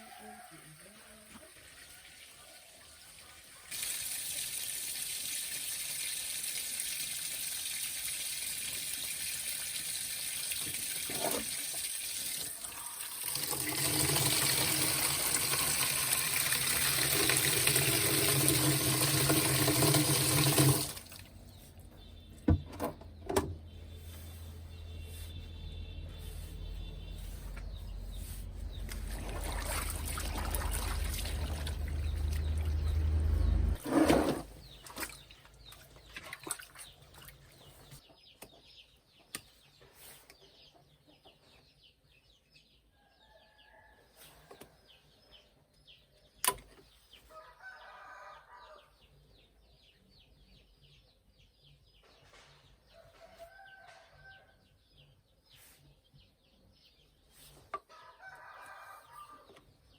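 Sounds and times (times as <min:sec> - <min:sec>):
rooster crowing: 0:00.0 - 0:01.0, 0:47.3 - 0:48.9, 0:57.9 - 0:59.4.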